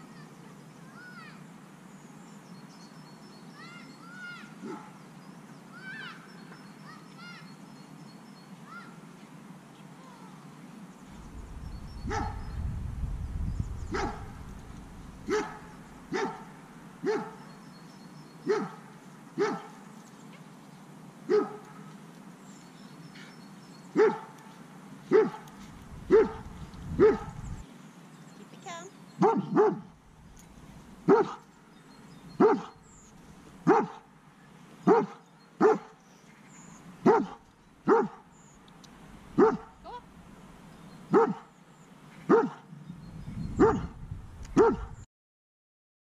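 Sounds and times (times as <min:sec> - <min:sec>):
dog barking: 0:12.1 - 0:12.4, 0:13.9 - 0:14.3, 0:15.3 - 0:17.4, 0:18.5 - 0:18.8, 0:19.4 - 0:19.8, 0:21.3 - 0:21.7, 0:24.0 - 0:24.3, 0:25.1 - 0:25.5, 0:26.1 - 0:27.5, 0:29.2 - 0:29.9, 0:31.1 - 0:31.4, 0:32.4 - 0:32.8, 0:33.6 - 0:34.0, 0:34.9 - 0:36.0, 0:37.0 - 0:38.2, 0:39.4 - 0:40.0, 0:41.1 - 0:41.5, 0:42.3 - 0:42.6, 0:43.6 - 0:44.0, 0:44.6 - 0:45.0.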